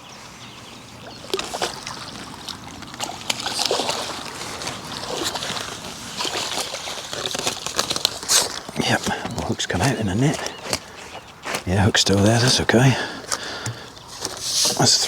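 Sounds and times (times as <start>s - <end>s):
fish splashing at water surface: 1.1s - 8.3s.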